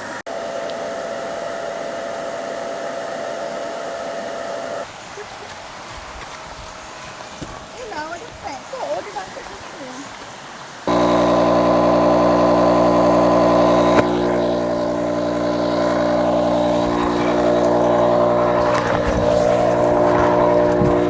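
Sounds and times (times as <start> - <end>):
motor running steadily: 10.9 - 21.0.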